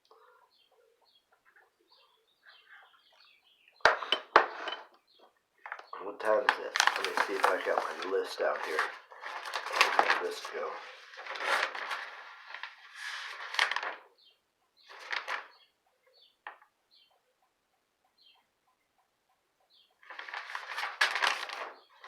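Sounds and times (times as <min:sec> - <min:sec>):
papers rustling: 0:05.6 - 0:14.1, 0:14.9 - 0:15.5, 0:20.0 - 0:22.0.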